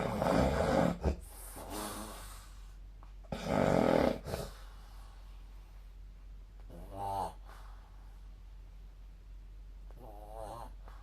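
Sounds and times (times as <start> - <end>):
person snoring: 0.0 - 2.2, 3.3 - 4.6
soft breath: 4.2 - 6.1.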